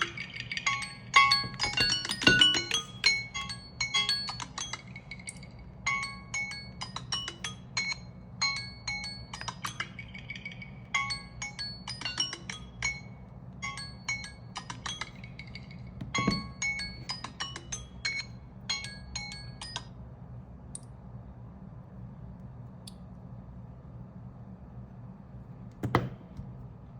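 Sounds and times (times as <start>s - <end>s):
tinkling ringtone melody: 0.0s - 19.9s
faint low hum: 0.0s - 26.9s
knock: 16.0s - 16.6s, 25.8s - 26.2s.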